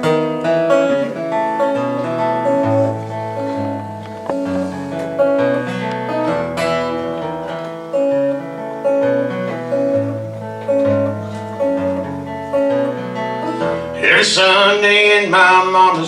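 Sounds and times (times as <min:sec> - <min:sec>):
acoustic guitar strumming: 0:00.0 - 0:16.0.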